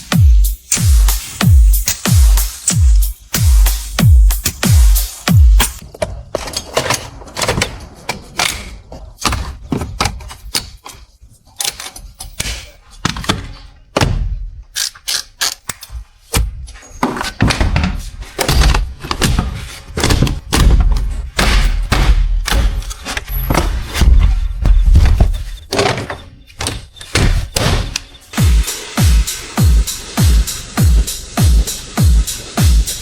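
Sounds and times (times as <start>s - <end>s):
knocks and thuds: 13.0s - 14.5s, 16.3s - 28.6s.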